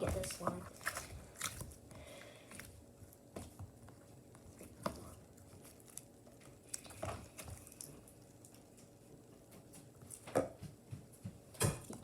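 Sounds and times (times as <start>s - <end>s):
slime clicking and squishing: 0.0s - 9.1s.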